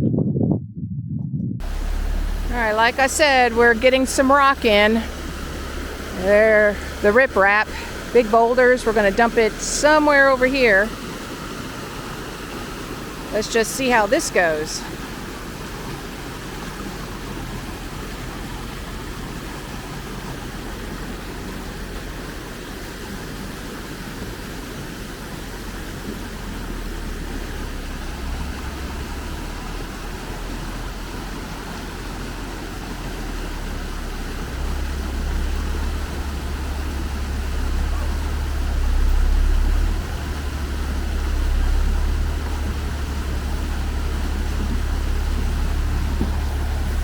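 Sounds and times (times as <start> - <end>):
heavy truck engine rumble: 1.4 - 47.0.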